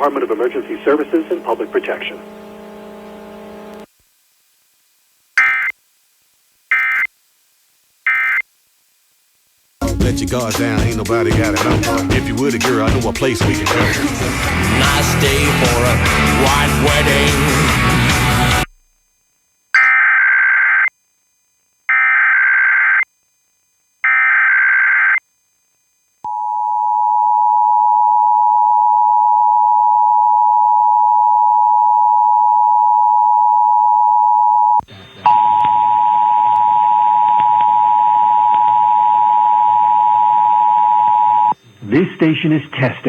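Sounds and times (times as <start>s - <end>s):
radio hiss: 0.0s - 3.9s, 34.8s - 35.8s, 41.5s - 43.0s
two-tone attention signal: 33.3s - 41.6s.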